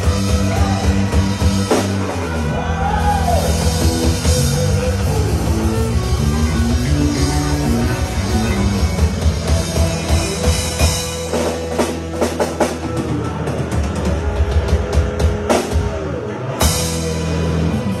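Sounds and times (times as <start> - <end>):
rock music: 0.0 - 18.0.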